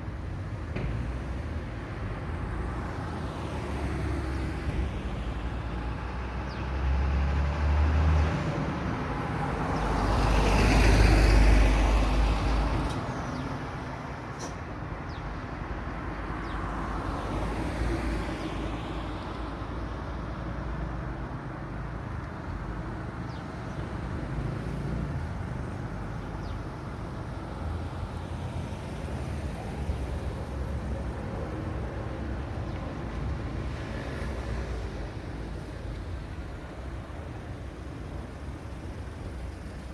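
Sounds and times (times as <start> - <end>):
passing cars engines and tyres: 0.0 - 39.9.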